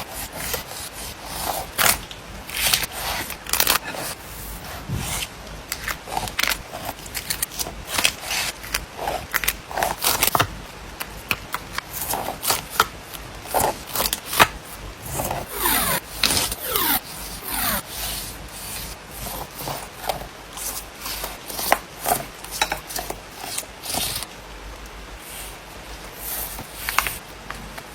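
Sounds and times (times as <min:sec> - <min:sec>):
paper rubbing and sliding on desk: 0:00.0 - 0:09.2, 0:13.5 - 0:22.3
squeaky sliding sounds: 0:15.0 - 0:20.0.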